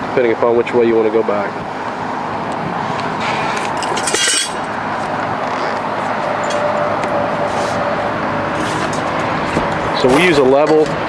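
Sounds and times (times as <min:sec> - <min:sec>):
metal parts clinking: 0:03.7 - 0:04.7.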